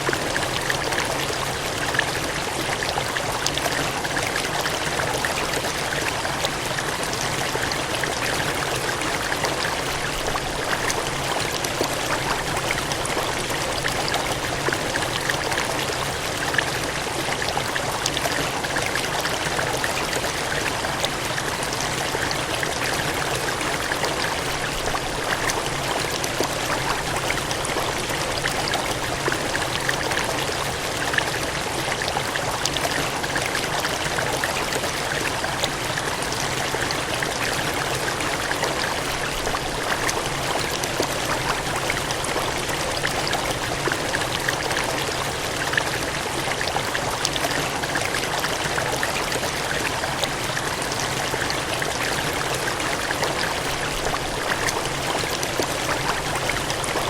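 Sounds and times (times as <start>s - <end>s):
water gushing and cascading: 0.0s - 57.0s.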